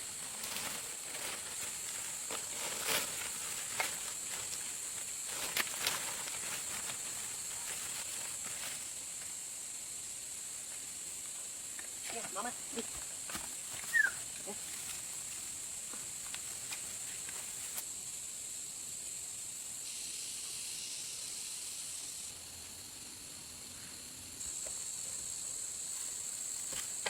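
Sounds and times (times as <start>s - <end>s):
high-pitched insect drone: 18.0s - 27.0s.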